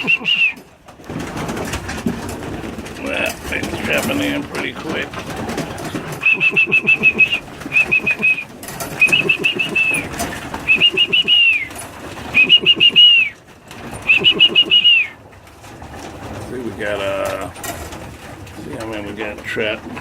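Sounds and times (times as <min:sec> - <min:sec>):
trilled whistled call: 0:00.0 - 0:00.6, 0:06.2 - 0:13.4, 0:14.0 - 0:15.2.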